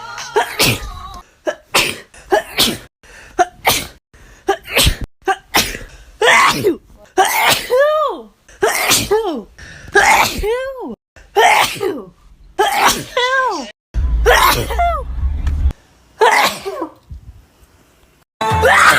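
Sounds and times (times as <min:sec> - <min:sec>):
woman sneezing: 0:00.4 - 0:10.7, 0:11.4 - 0:13.7, 0:14.3 - 0:15.0.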